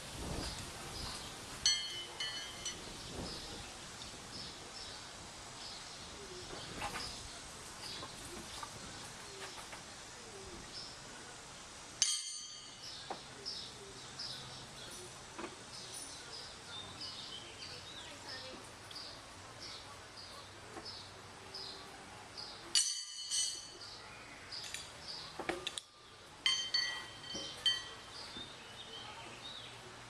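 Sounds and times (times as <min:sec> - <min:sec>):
birds chirping: 0:00.2 - 0:30.0.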